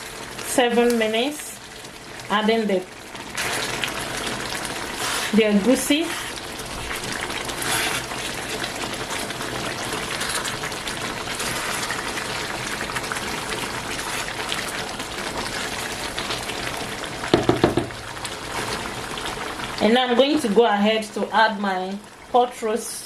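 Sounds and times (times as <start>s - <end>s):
pot of soup boiling: 0.0s - 23.0s.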